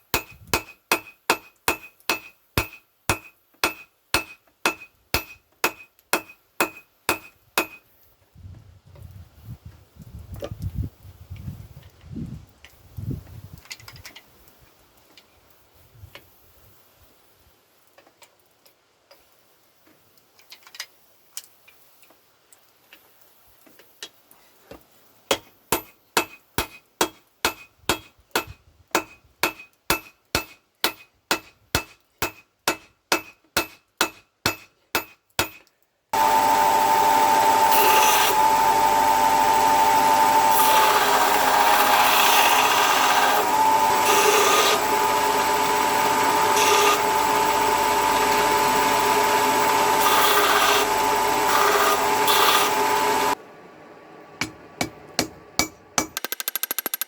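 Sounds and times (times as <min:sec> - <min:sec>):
hammer on hot steel anvil: 0:00.1 - 0:07.8, 0:25.3 - 0:35.6, 0:54.4 - 0:56.2
power grinder grinding steel: 0:36.2 - 0:53.4.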